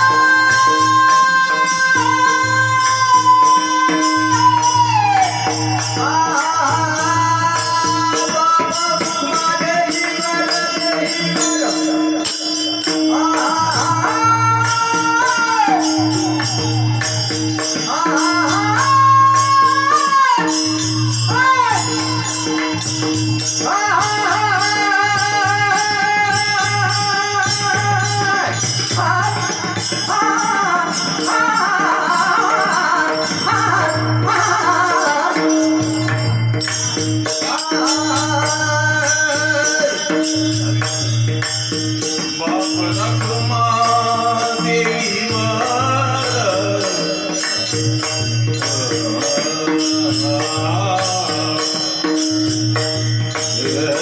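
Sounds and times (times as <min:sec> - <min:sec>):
jingling hand percussion: 0:00.0 - 0:54.0.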